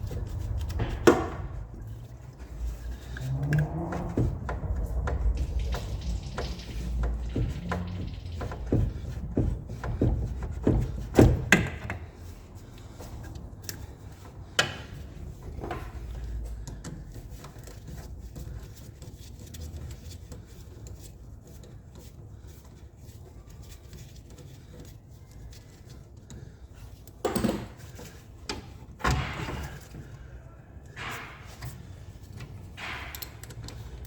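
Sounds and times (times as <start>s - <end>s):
tools clunking: 0.0s - 18.8s, 25.9s - 34.0s
handling noises: 0.0s - 34.0s.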